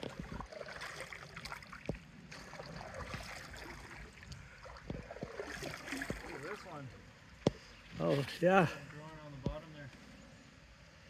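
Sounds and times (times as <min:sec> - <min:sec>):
river water splashing: 0:00.0 - 0:07.4.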